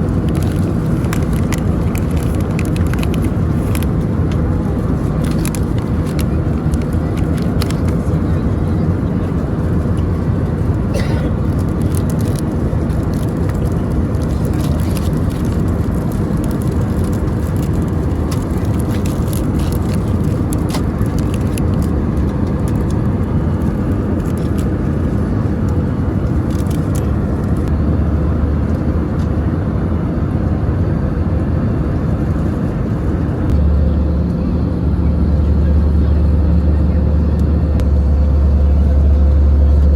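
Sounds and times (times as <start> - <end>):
airliner cabin rumble with hiss: 0.0 - 39.9.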